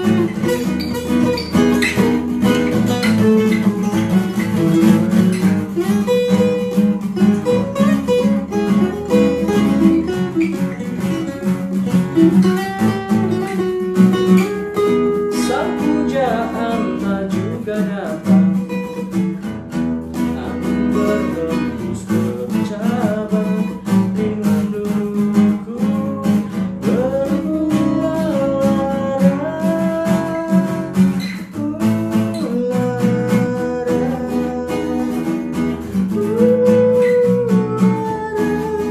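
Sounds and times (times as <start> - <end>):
acoustic guitar strumming: 0.0 - 38.9.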